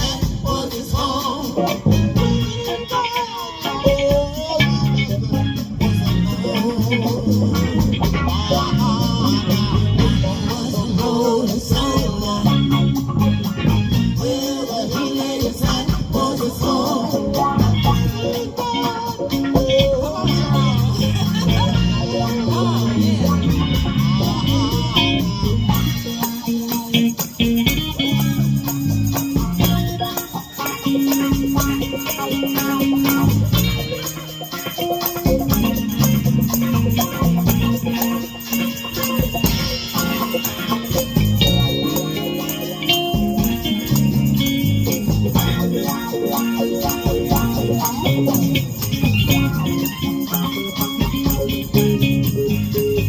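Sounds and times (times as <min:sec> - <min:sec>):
bass line: 0:00.0 - 0:53.0
live band playing: 0:00.0 - 0:53.0
rattling hand percussion: 0:00.0 - 0:53.0.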